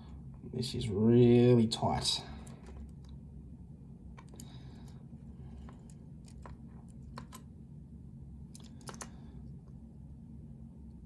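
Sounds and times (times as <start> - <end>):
low steady hum: 0.0 - 11.0
metallic clicks and scrapes: 4.2 - 7.5.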